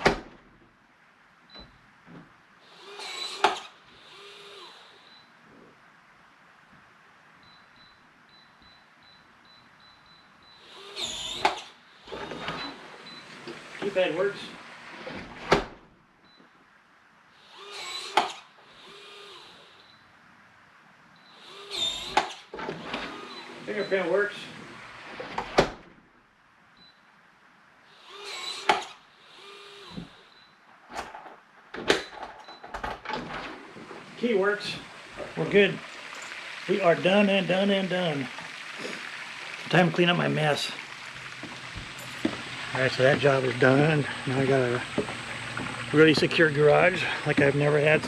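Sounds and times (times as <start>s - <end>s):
small motor whirring: 2.6s - 5.3s, 10.5s - 12.8s, 17.4s - 20.0s, 21.3s - 23.9s, 27.9s - 30.4s
high electronic beep: 42.0s - 42.3s.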